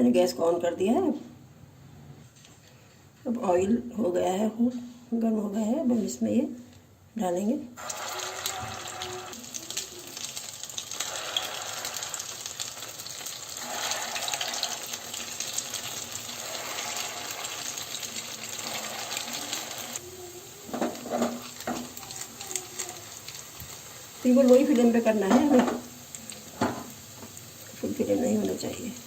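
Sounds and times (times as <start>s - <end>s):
food sizzling in hot oil: 7.8s - 29.0s.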